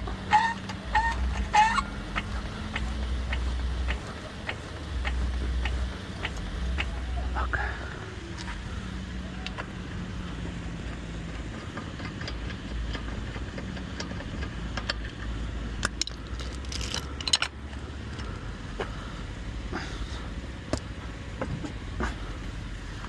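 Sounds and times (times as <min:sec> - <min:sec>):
low vehicle rumble: 0:00.0 - 0:23.0
metallic clinks on lug nuts: 0:11.7 - 0:18.3.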